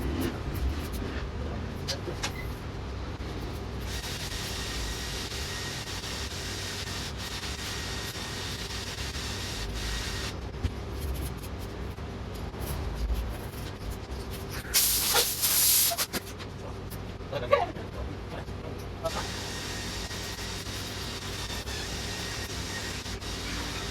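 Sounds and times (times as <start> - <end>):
aerosol can spraying: 3.8 - 10.3, 14.8 - 16.2, 19.1 - 23.9.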